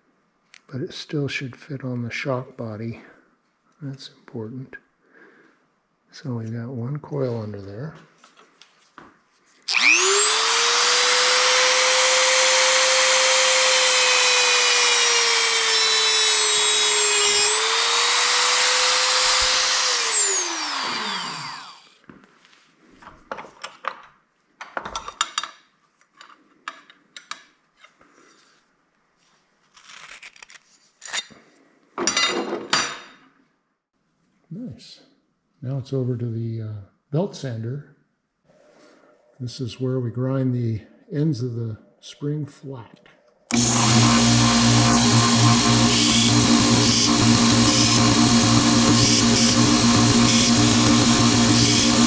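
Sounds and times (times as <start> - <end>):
power tool motor whining: 9.7 - 21.9, 43.5 - 52.0.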